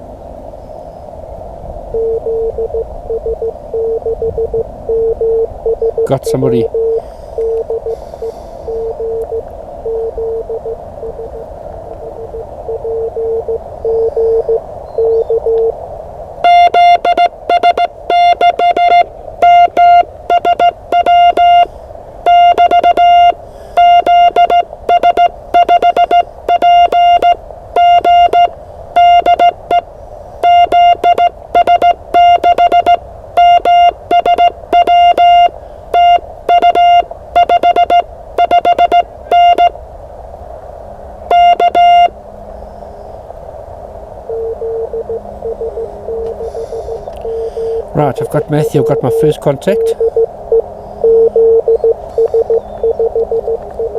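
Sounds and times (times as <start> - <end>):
faint morse code signal: 1.9 - 15.8, 16.4 - 39.8, 41.3 - 42.2, 44.3 - 53.9
loud morse code tone: 2.0 - 15.8, 16.4 - 39.8, 41.3 - 42.2, 44.3 - 53.9
radio band hiss: 6.0 - 9.1, 46.2 - 50.2.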